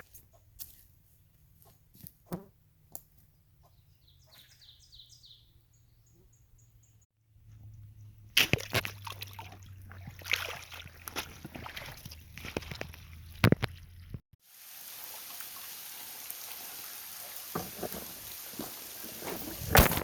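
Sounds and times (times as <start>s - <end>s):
bird singing: 3.3s - 7.1s
water sloshing and splashing: 8.4s - 14.2s.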